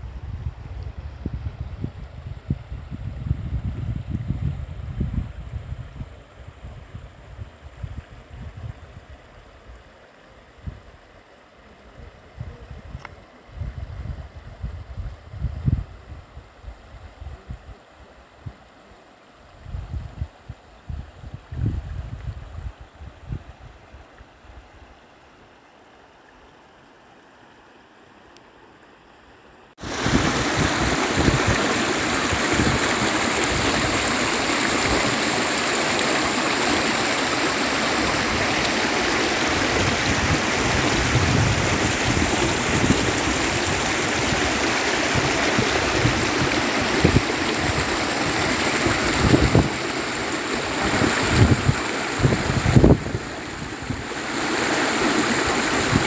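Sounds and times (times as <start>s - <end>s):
rushing stream water: 25.1s - 56.0s.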